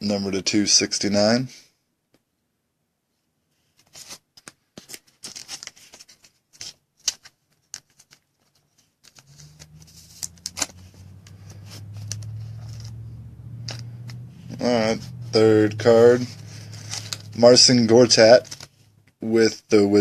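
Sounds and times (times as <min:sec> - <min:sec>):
cards and plastic sleeves handled: 0:03.6 - 0:14.8, 0:16.2 - 0:19.2
steady low hum: 0:09.9 - 0:19.4.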